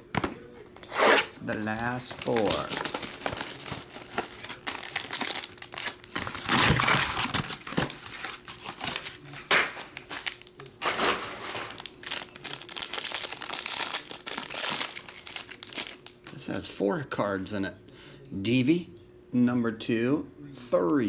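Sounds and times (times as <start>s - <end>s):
plastic wrapping crinkling and tearing: 0.8s - 16.4s.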